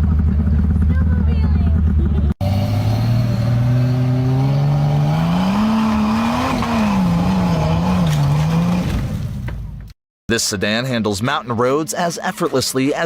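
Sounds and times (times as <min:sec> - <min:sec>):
vehicle engine revving under load: 0:02.2 - 0:09.6.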